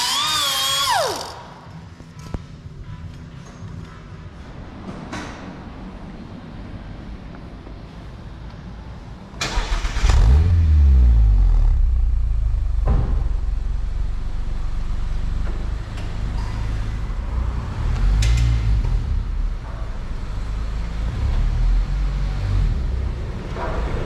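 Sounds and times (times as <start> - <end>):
car engine starting and idling: 5.2 - 24.0.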